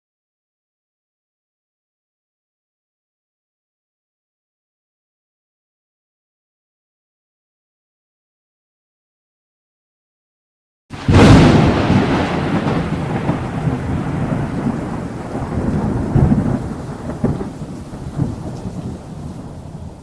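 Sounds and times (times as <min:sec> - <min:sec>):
thunderclap with rolling rumble: 0:10.9 - 0:20.0.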